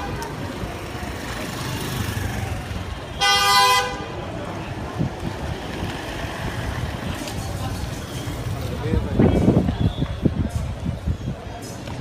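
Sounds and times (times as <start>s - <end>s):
street traffic rumble: 0.0s - 12.0s
vehicle horn blast: 3.1s - 4.0s.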